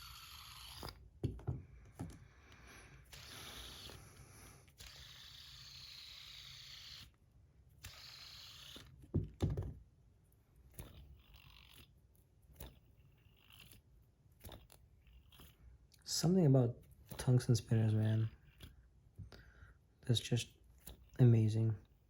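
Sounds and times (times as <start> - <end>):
fidget spinner whirring: 0.0 - 1.1, 1.9 - 9.2, 10.6 - 16.2.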